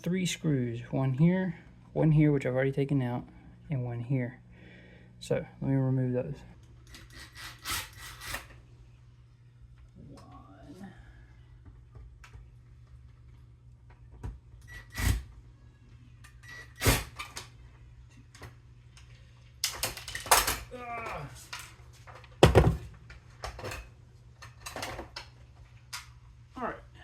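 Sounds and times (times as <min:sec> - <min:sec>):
tools and parts handled: 0:19.6 - 0:20.7.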